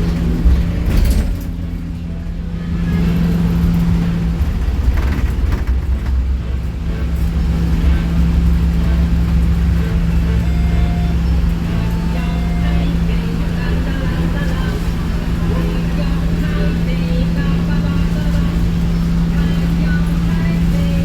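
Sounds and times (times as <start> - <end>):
rattles and knocks: 0.0 - 2.1, 3.0 - 8.1
bus engine drone: 0.0 - 21.0.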